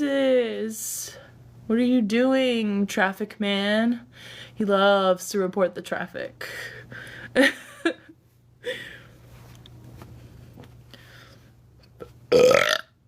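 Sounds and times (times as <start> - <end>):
woman breathing: 4.1 - 4.6, 6.4 - 7.4, 8.6 - 9.3, 10.3 - 11.6.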